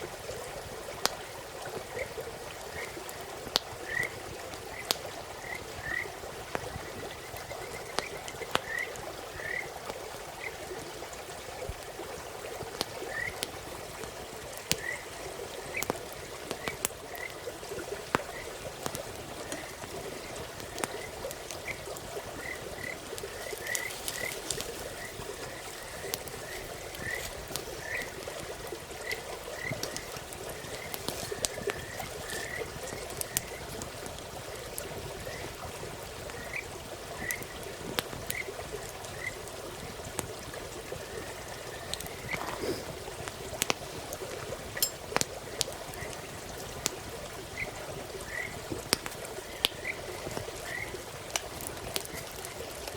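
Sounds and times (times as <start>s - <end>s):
campfire crackling: 0.0s - 52.9s
frogs chirping: 1.3s - 11.0s, 13.0s - 13.5s, 14.2s - 39.5s, 40.9s - 43.4s, 44.7s - 51.2s.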